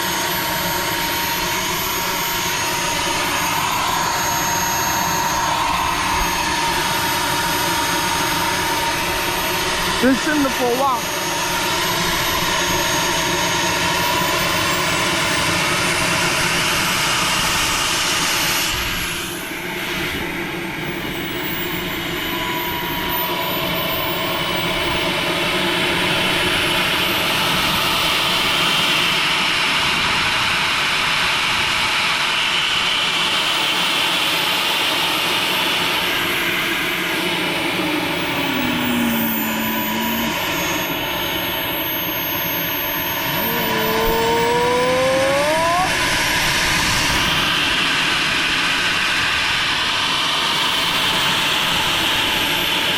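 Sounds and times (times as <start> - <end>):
model jet turbine roaring: 0.0 - 52.9.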